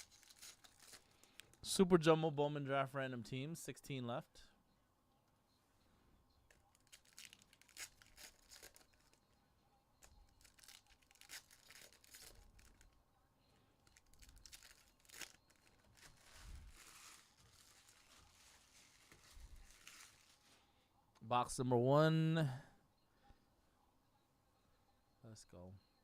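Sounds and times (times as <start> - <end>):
plastic wrapping tearing: 0.0 - 1.5, 6.7 - 9.2, 10.4 - 12.8, 14.0 - 20.5.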